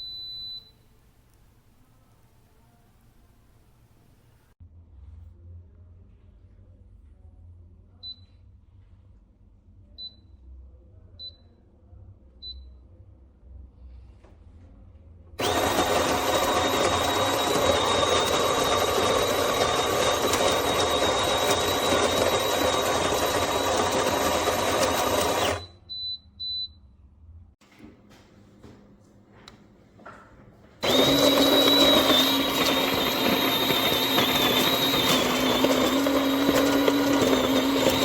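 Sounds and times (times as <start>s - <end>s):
coffee grinder grinding beans: 15.4s - 25.6s, 30.8s - 38.0s.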